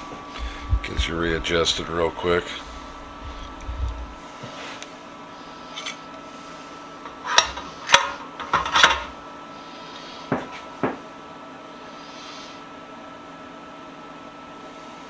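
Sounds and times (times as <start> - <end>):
faint shop hum: 0.0 - 15.0
metal parts clinking: 5.7 - 6.0, 7.1 - 9.1.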